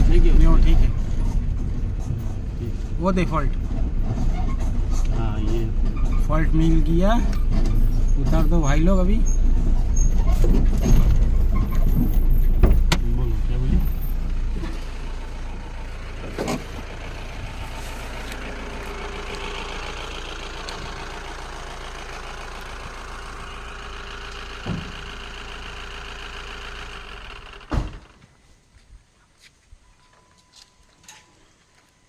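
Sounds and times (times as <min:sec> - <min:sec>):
vehicle engine running: 0:00.0 - 0:28.8
loud thump: 0:12.5 - 0:13.1, 0:24.6 - 0:24.9, 0:27.6 - 0:28.1.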